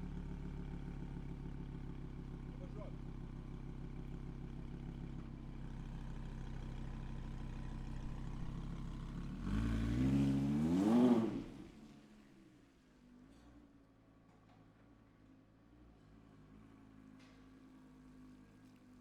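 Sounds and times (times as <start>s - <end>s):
car engine idling and revving: 0.0s - 12.5s.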